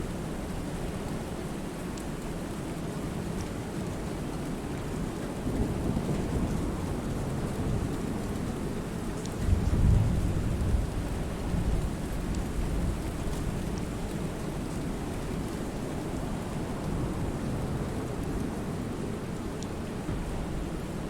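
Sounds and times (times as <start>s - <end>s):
rain falling on a lake: 0.0s - 21.0s
thunder rumbling: 9.4s - 13.0s.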